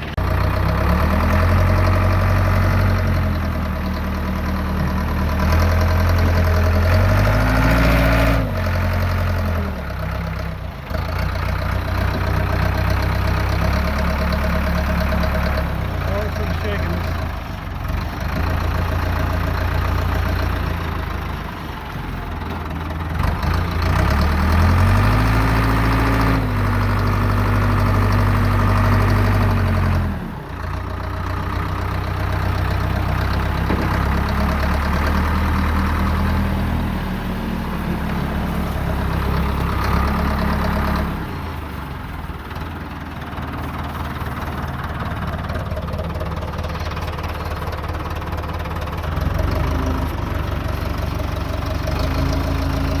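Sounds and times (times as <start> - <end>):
backhoe engine running: 0.0 - 53.0.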